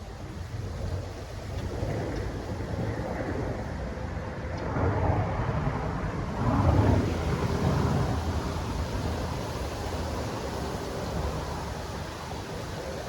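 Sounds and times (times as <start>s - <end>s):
rain: 0.0s - 13.0s
wind gusts: 0.0s - 13.0s
deep rumble: 4.5s - 11.6s.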